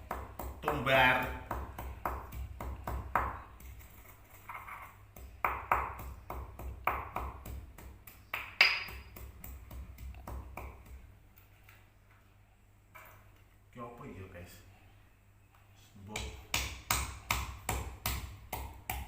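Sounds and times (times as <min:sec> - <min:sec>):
spices pounded with ringing knocks: 0:00.0 - 0:03.8, 0:04.6 - 0:11.0, 0:16.2 - 0:19.0.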